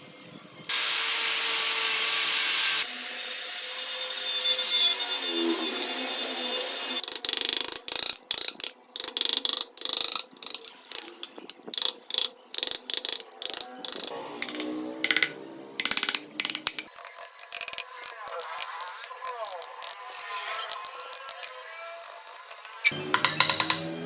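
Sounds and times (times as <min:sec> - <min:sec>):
steady power tool noise: 0:00.7 - 0:07.1
scraping strokes on wood: 0:07.0 - 0:23.8.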